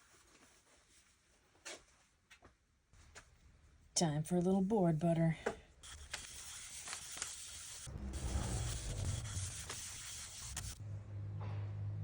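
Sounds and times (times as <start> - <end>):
hand rubbing wooden board: 8.2 - 10.8.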